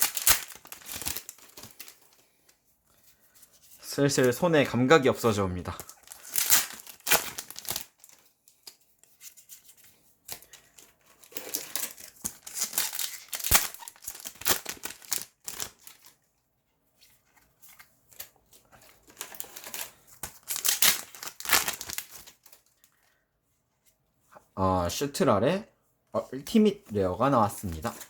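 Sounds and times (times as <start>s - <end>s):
foil wrappers tearing and crinkling: 0.0s - 2.2s, 5.7s - 8.8s, 11.2s - 16.2s, 19.1s - 22.8s.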